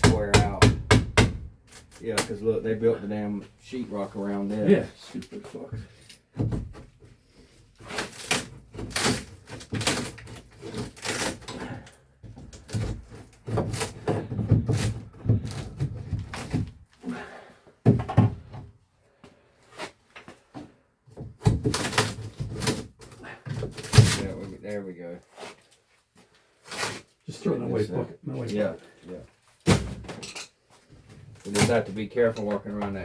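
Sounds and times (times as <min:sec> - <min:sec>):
demolition knocks thuds and scraping: 0:05.8 - 0:07.1, 0:07.8 - 0:16.9.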